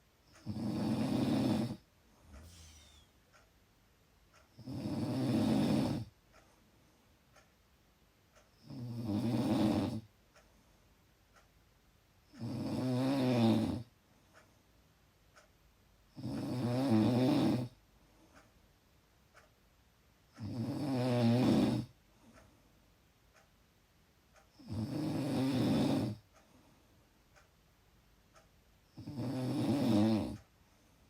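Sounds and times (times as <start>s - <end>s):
quiet breathing: 0.3s - 3.5s, 4.3s - 7.5s, 8.3s - 11.5s, 13.5s - 15.5s, 16.1s - 18.7s, 20.3s - 23.4s, 24.3s - 27.5s, 28.3s - 31.0s
loud snoring: 0.4s - 1.8s, 4.6s - 6.1s, 8.6s - 10.1s, 12.4s - 13.9s, 16.2s - 17.8s, 20.4s - 21.9s, 24.6s - 26.2s, 29.0s - 30.4s.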